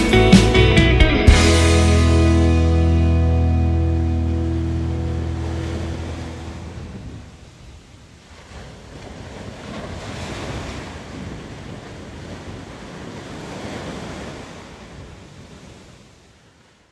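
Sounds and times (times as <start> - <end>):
ocean waves washing onto beach: 3.1 - 16.9
wind on microphone: 4.3 - 16.0.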